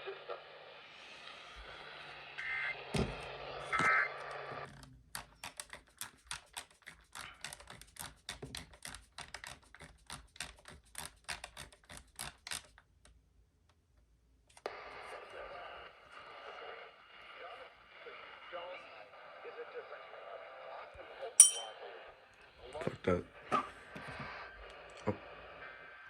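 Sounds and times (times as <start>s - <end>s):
radio receiver hiss: 0.0s - 4.6s, 14.6s - 26.0s
computer keyboard typing: 5.2s - 12.8s.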